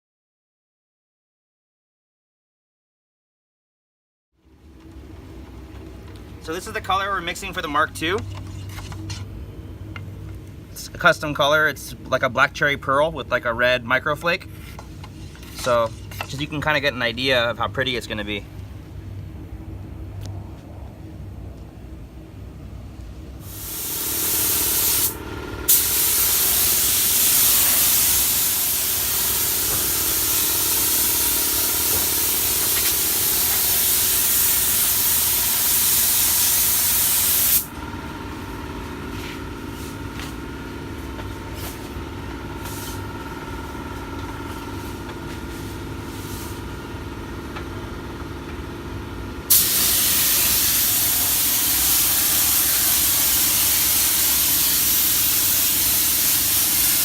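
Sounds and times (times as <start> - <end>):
steady hum: 4.4 - 57.0
paint spray gun hissing: 23.4 - 37.7, 49.5 - 57.0.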